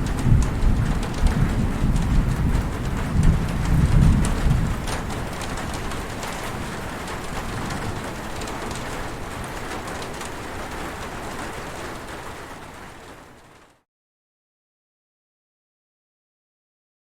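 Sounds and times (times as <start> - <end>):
heavy rain hissing: 0.0 - 13.4
sharp raindrop ticks: 0.0 - 13.7.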